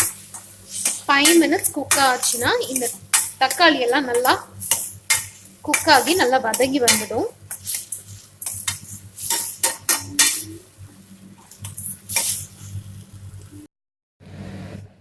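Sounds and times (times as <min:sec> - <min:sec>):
metal spoon scraping a pan: 0:00.0 - 0:10.6, 0:11.6 - 0:12.7.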